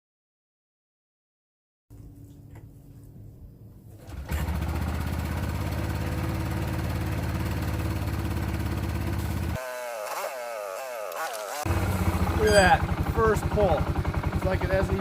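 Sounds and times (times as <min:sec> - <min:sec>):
atv engine running: 0:04.0 - 0:15.0.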